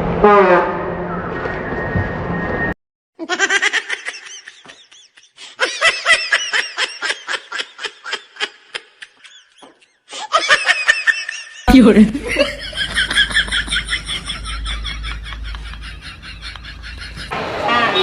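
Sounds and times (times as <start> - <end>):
train horn: 0.1 - 1.1
rapid high-pitched laughter: 3.2 - 17.3.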